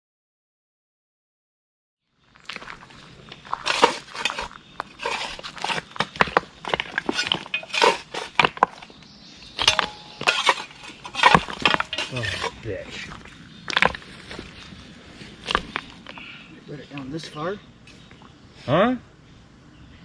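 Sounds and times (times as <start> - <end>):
digging dirt and stones: 2.4 - 16.4.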